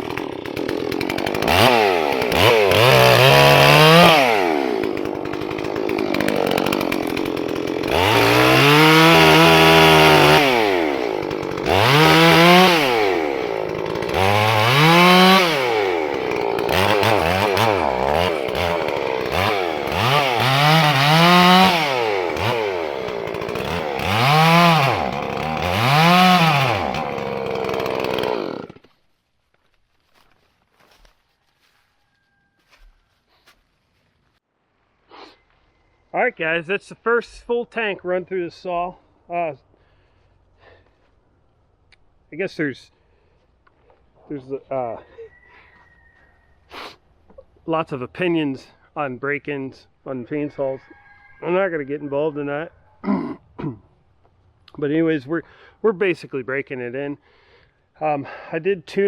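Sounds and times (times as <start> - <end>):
chainsaw revving while cutting wood: 0.0 - 28.9.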